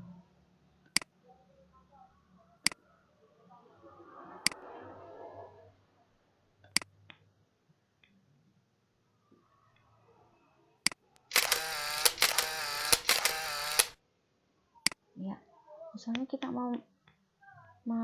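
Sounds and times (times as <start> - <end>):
single sharp clicks: 10.9 - 14.0
camera shutter clicks: 11.3 - 14.0
camera whir: 11.3 - 14.0.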